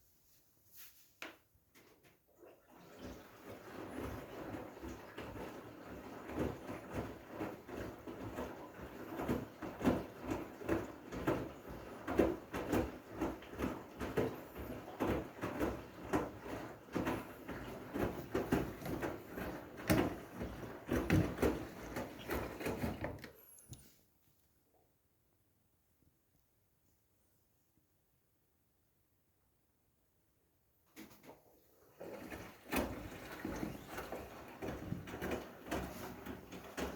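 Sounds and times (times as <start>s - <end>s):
sloshing water: 1.8s - 23.7s, 31.0s - 36.9s
washing machine drum thudding: 3.0s - 23.4s, 32.0s - 36.9s.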